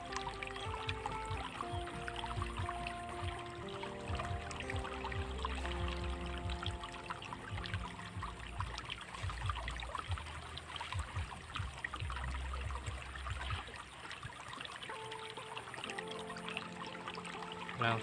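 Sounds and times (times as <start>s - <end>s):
low rumble with thumps: 0.0s - 14.4s
water trickling in a ditch: 0.0s - 18.0s.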